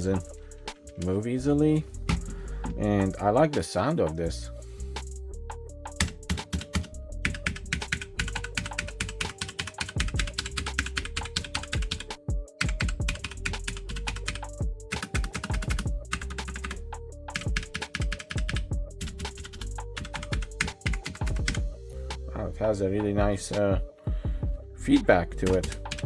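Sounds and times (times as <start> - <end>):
background music melody: 0.0 - 26.0
mechanical keyboard typing: 6.0 - 16.8, 17.4 - 21.6, 25.4 - 26.0.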